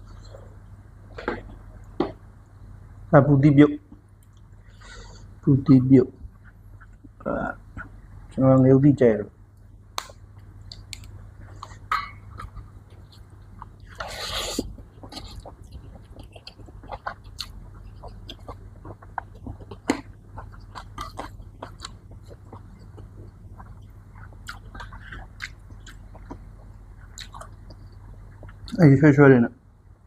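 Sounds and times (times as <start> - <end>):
person chewing and biting food: 10.0 - 28.8.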